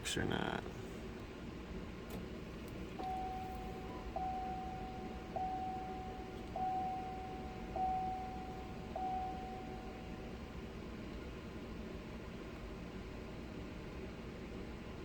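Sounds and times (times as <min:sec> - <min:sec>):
dashboard warning chime: 0:03.0 - 0:11.0.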